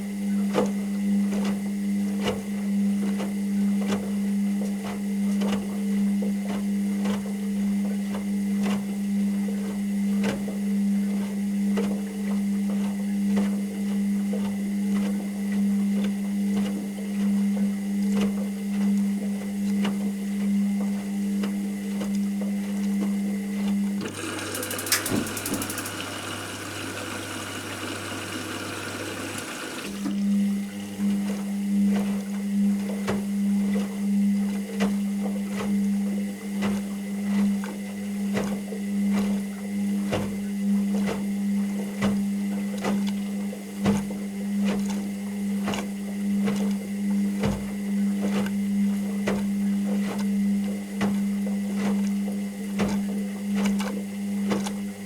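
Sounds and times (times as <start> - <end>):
washing machine motor hum: 0.0 - 55.0
water hissing through machine: 24.0 - 30.3.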